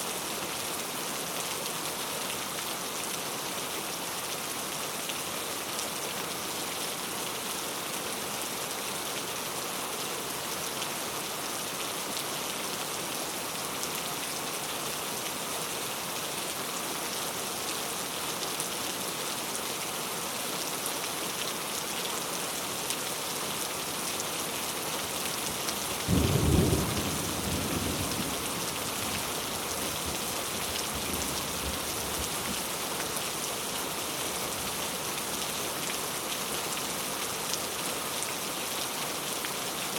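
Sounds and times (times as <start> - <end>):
heavy rain hissing: 24.5 - 33.0.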